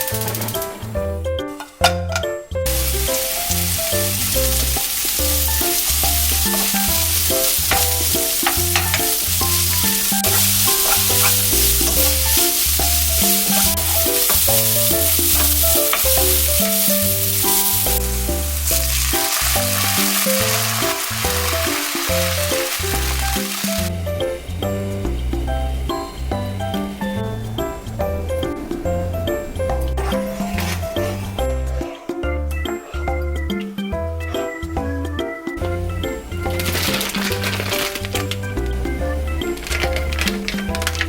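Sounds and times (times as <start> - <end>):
background music: 0.0 - 41.0
food sizzling in a pan: 2.7 - 27.6, 36.2 - 41.0.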